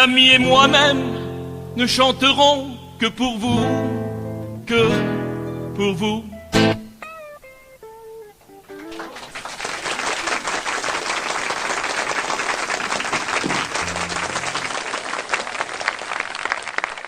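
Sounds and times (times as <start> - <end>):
guitar notes: 0.0 - 9.2, 13.8 - 14.8
audience applauding: 8.7 - 17.0.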